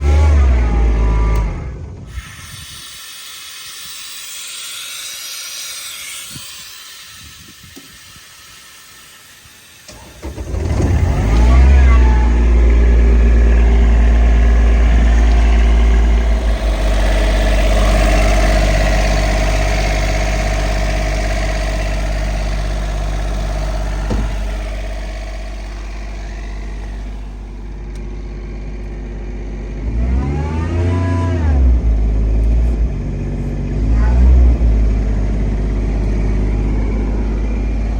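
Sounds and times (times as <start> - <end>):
diesel compressor engine running: 0.0 - 37.9
loud low hum: 10.2 - 37.9.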